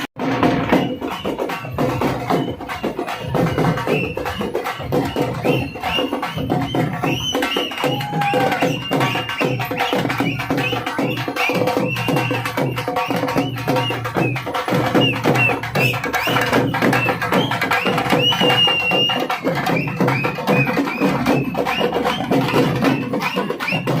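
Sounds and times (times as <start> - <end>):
fast dense drumming: 0.0 - 24.0.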